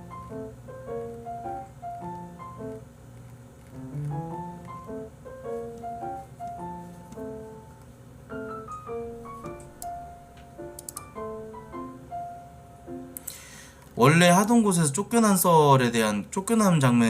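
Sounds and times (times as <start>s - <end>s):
soft piano music: 0.0s - 16.0s
faint clicks: 10.7s - 11.1s.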